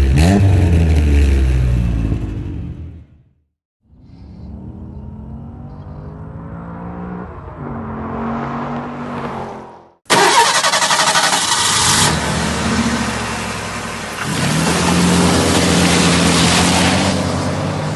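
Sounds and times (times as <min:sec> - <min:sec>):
car engine revving: 0:04.1 - 0:17.6.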